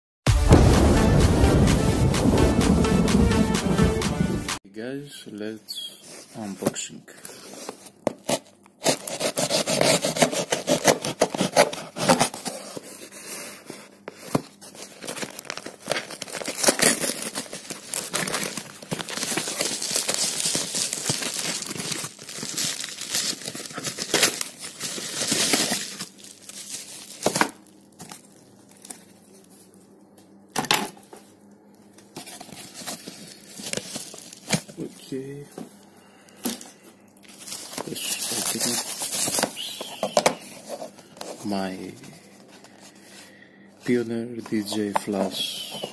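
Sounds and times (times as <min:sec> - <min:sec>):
packaging torn and crinkled: 0:08.2 - 0:13.0, 0:14.3 - 0:29.8, 0:30.9 - 0:35.4, 0:37.1 - 0:42.0.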